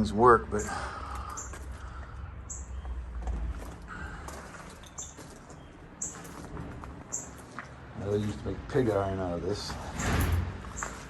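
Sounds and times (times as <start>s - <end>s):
high bird chirps: 0.6s - 3.0s, 4.8s - 6.4s, 7.1s - 7.4s.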